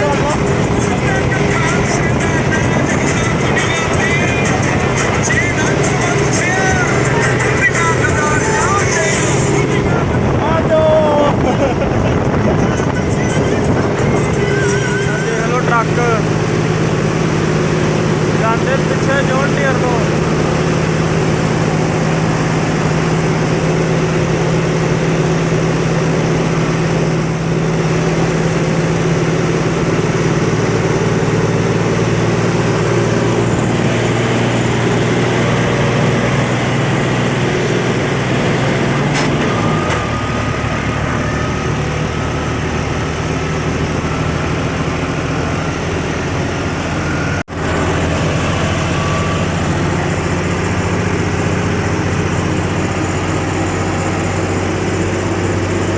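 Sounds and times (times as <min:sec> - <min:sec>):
heavy vehicle engine running: 0:00.0 - 0:55.9.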